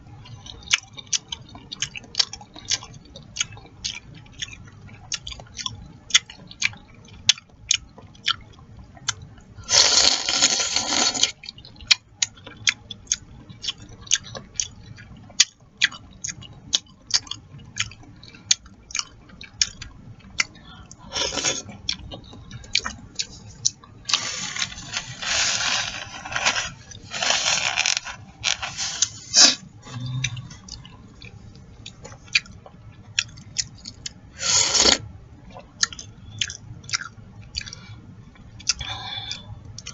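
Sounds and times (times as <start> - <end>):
wet chewing and lip-smacking: 0.1 - 34.2, 34.8 - 39.9
slurping soup: 9.7 - 11.3, 24.1 - 30.6, 34.4 - 35.0.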